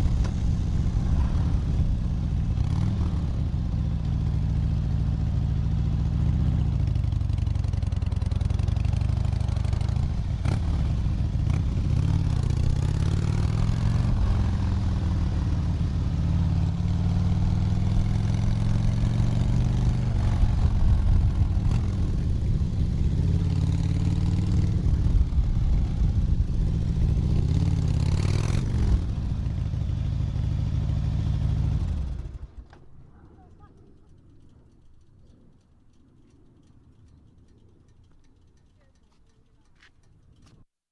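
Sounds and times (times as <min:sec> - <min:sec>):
motorcycle engine revving: 0:00.0 - 0:32.7.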